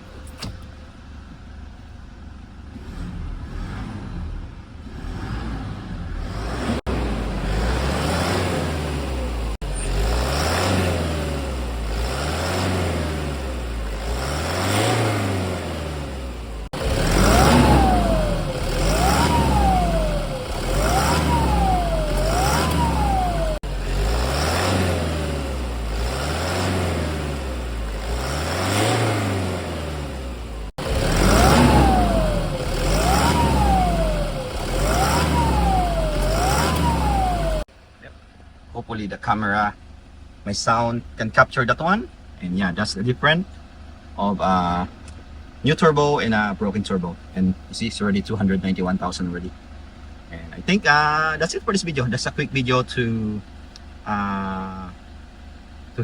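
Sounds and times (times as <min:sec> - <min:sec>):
diesel engine revving: 0:02.3 - 0:37.8
turbo whine: 0:16.3 - 0:24.8, 0:30.3 - 0:37.7.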